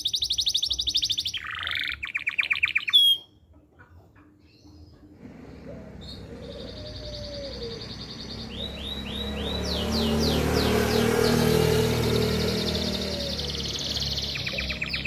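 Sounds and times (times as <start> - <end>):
canary singing trills: 0.0 - 3.4, 4.4 - 15.0.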